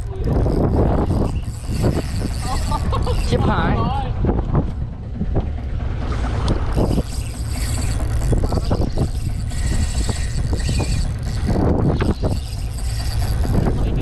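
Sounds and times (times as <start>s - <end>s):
boat engine rumbling: 0.0s - 14.0s
wind buffeting microphone: 0.0s - 14.0s.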